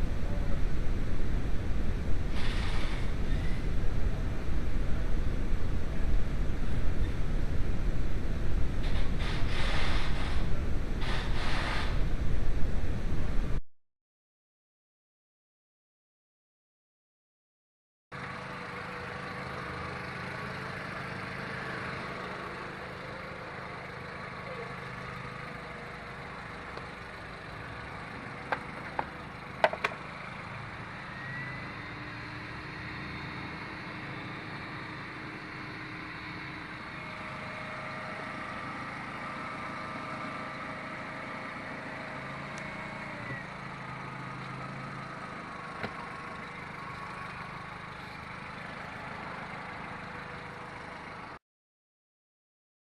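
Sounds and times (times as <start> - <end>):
car engine idling: 18.2 - 30.9.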